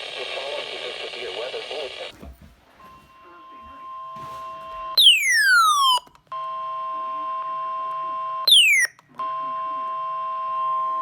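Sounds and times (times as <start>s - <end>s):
electronic falling sweep tone: 5.0s - 6.0s, 8.5s - 8.9s.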